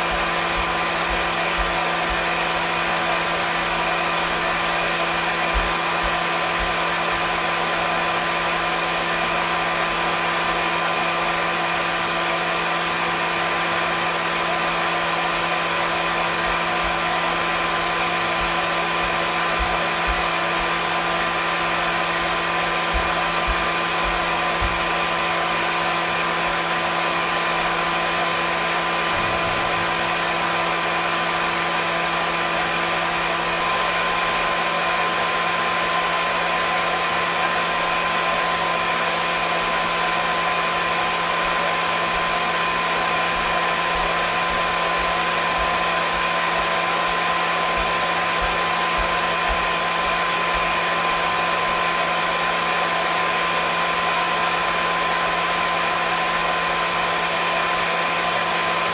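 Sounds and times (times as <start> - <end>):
hair dryer running: 0.0 - 58.9.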